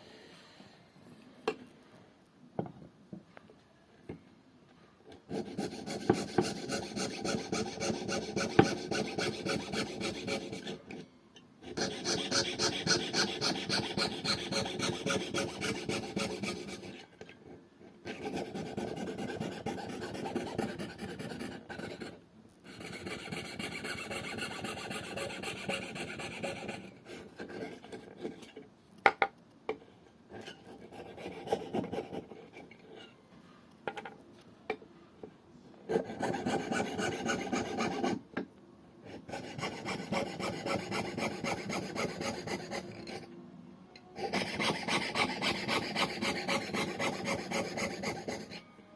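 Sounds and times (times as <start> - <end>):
hand tool rasping on wood: 5.3 - 10.8, 11.7 - 16.9, 22.8 - 26.8, 35.9 - 38.2, 39.3 - 43.1, 44.2 - 48.6.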